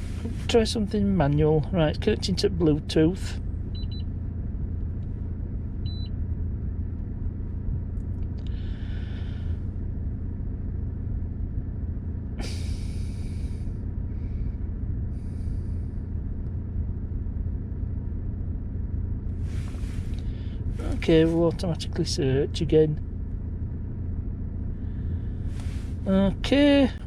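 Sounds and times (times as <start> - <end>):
car engine idling: 0.0 - 27.0
short breathy hisses: 12.4 - 13.6.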